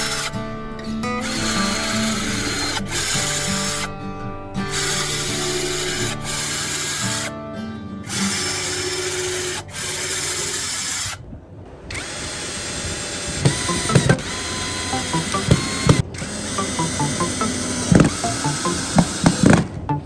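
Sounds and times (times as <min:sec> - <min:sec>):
power tool motor running: 0:00.0 - 0:04.0, 0:04.6 - 0:07.3, 0:08.1 - 0:11.2, 0:11.9 - 0:19.6
sharp clicks and knocks: 0:13.4 - 0:16.1.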